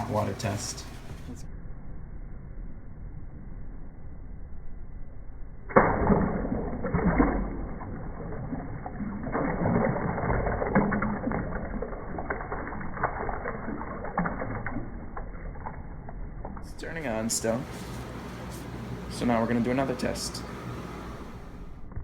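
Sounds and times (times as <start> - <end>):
water pouring and splashing: 5.8 - 17.3.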